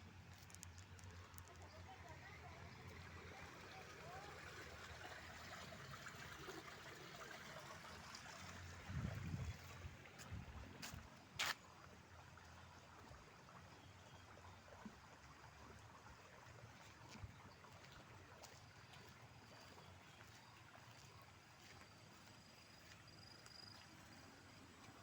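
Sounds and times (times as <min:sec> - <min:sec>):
faint clicks: 0:00.3 - 0:01.9.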